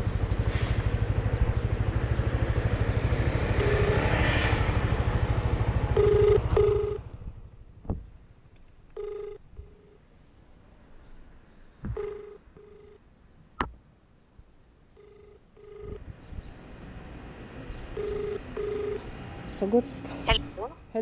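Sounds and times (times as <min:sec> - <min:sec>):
telephone ringback tone: 0:03.6 - 0:04.2, 0:06.0 - 0:07.1, 0:09.0 - 0:10.0, 0:11.9 - 0:13.0, 0:15.0 - 0:16.0, 0:18.0 - 0:19.1.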